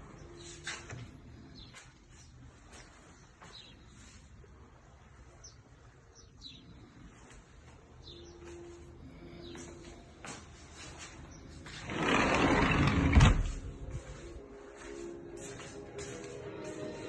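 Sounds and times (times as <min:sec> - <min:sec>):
small birds chirping: 0:00.1 - 0:12.4.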